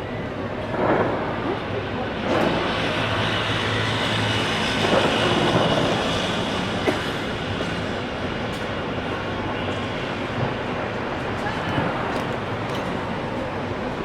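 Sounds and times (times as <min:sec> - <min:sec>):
fireworks rumbling and crackling: 0:00.4 - 0:06.5
crowd noise: 0:11.2 - 0:14.0.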